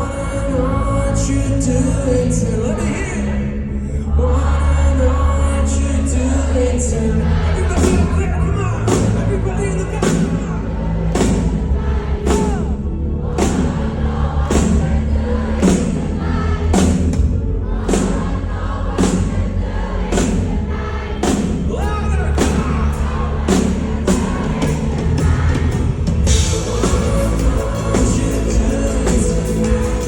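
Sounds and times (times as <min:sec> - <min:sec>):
live band music: 0:21.2 - 0:30.0
person singing: 0:26.3 - 0:30.0.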